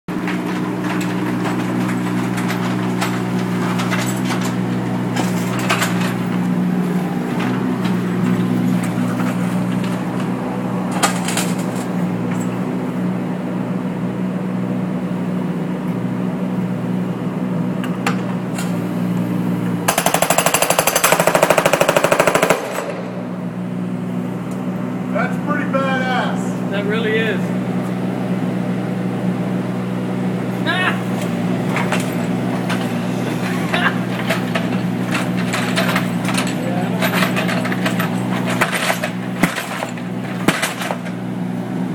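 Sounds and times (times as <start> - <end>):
jackhammer on cinder block: 0.1 - 6.7, 19.8 - 23.2, 30.7 - 41.2
machine droning: 0.1 - 41.9.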